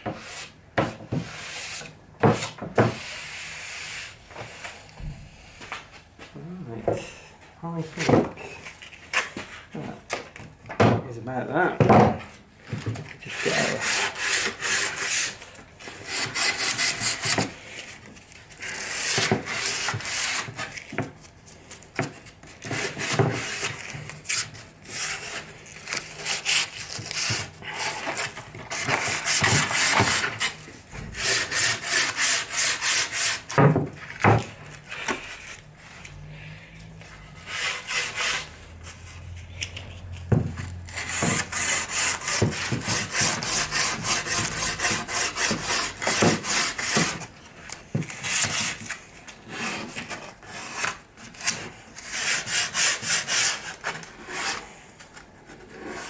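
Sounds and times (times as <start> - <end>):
sandpaper scraping wood: 0.1 - 4.8, 13.2 - 20.9, 22.6 - 33.6, 37.4 - 39.2, 40.9 - 47.3, 48.1 - 54.7.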